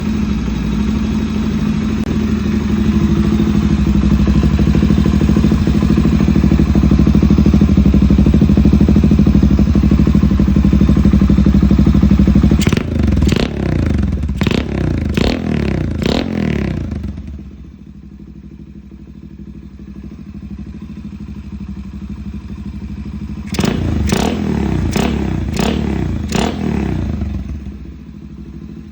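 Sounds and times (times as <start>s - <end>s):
minibike engine revving and idling: 0.0s - 28.9s.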